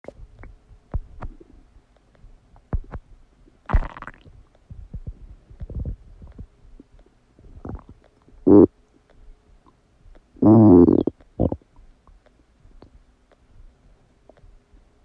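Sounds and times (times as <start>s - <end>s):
stomach growl: 3.7s - 8.8s, 10.4s - 11.8s
stomach gurgling: 3.7s - 8.8s, 10.4s - 11.8s.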